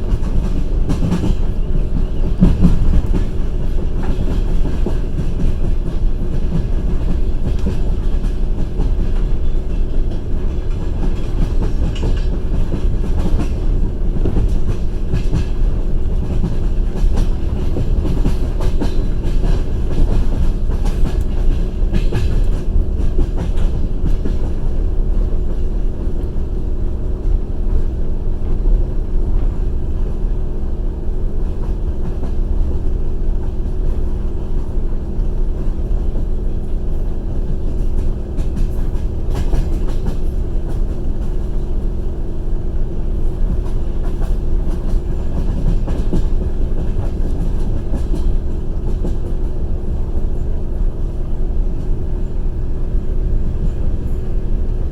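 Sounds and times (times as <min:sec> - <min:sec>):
wheels clicking over rail joints: 0:00.0 - 0:26.3, 0:34.9 - 0:42.2, 0:43.0 - 0:49.6
wheels rumbling on rails: 0:00.0 - 0:54.9.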